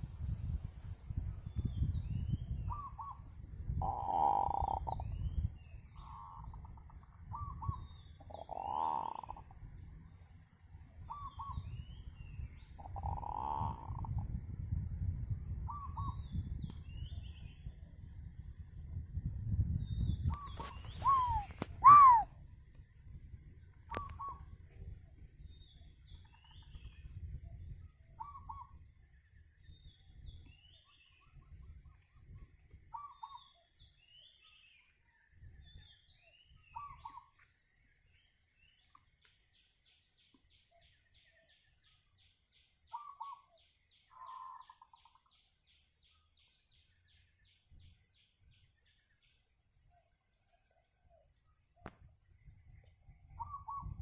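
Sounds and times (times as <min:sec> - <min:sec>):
small birds chirping: 0:01.2 - 0:54.0
dove cooing: 0:03.8 - 0:05.0, 0:06.0 - 0:09.5, 0:12.8 - 0:14.2, 0:20.6 - 0:22.3, 0:44.1 - 0:45.2.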